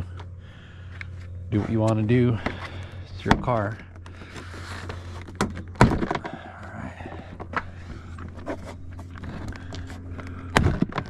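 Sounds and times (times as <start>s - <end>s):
steady low hum: 0.0s - 11.0s
panel clicks and rustles: 7.3s - 11.0s.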